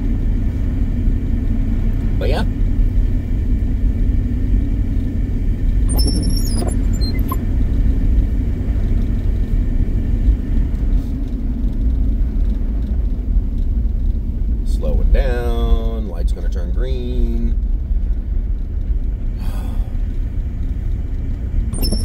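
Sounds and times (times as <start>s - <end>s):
truck driving on snow: 0.0s - 16.0s
brief high squeak: 5.9s - 7.4s, 21.8s - 22.0s.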